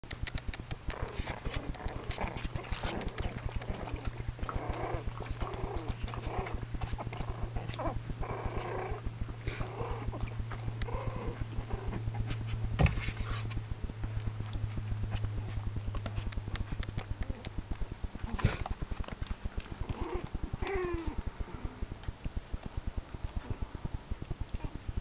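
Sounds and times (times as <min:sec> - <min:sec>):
rapid clicking: 0:00.0 - 0:07.4
low hum: 0:00.0 - 0:25.0
puppies growling and yipping: 0:00.3 - 0:12.6, 0:18.2 - 0:22.0.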